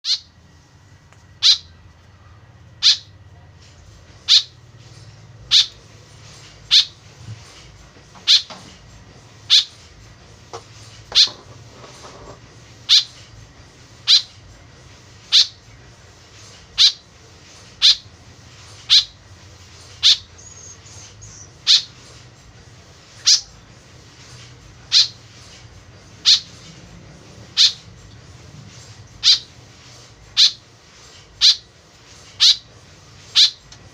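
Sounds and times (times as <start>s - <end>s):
woodswallow calling: 0.0s - 0.4s, 1.4s - 1.8s, 2.8s - 3.2s, 4.2s - 4.6s, 5.5s - 5.8s, 6.6s - 7.0s, 8.2s - 8.6s, 9.4s - 9.8s, 11.1s - 11.4s, 12.8s - 13.2s, 14.0s - 14.4s, 15.3s - 15.6s, 16.8s - 17.1s, 17.8s - 18.1s, 18.8s - 19.2s, 19.9s - 22.1s, 23.2s - 23.6s, 24.8s - 25.3s, 26.2s - 26.6s, 27.5s - 27.9s, 29.1s - 29.6s, 30.3s - 30.6s, 31.4s - 31.7s, 32.4s - 32.7s, 33.3s - 33.7s.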